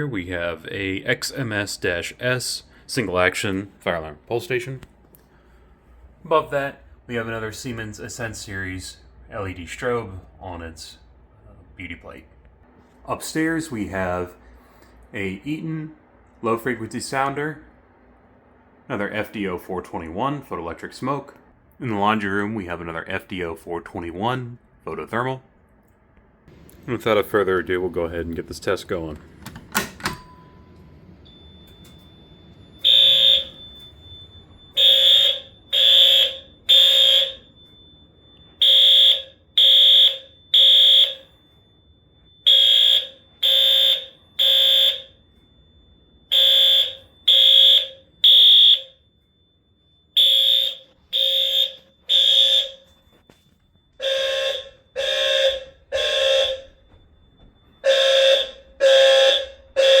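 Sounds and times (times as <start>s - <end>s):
faint steady high tone: 30.1s - 38.6s, 45.0s - 47.3s, 47.9s - 51.1s, 52.7s - 56.0s
fire alarm horn blasts: 30.1s - 60.0s.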